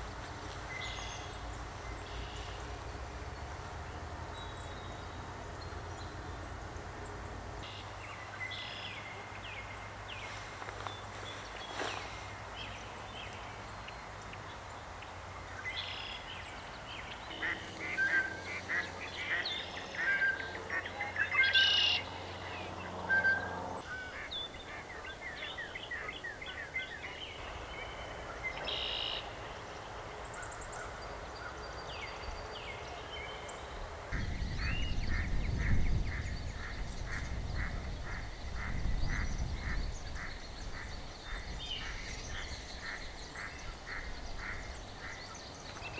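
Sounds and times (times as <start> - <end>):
waterfowl honking and quacking: 17.3 - 25.1.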